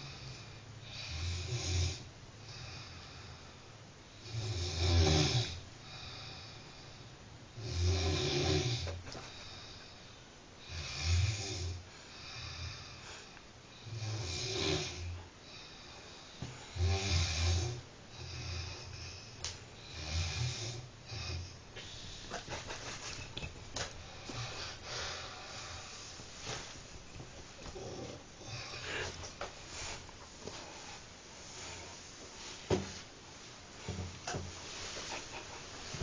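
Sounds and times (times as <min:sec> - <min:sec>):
person snoring heavily: 0:00.0 - 0:03.4, 0:04.2 - 0:06.6, 0:07.6 - 0:10.0, 0:10.6 - 0:13.0, 0:13.8 - 0:15.8, 0:16.7 - 0:22.8, 0:24.0 - 0:26.2, 0:27.6 - 0:30.0.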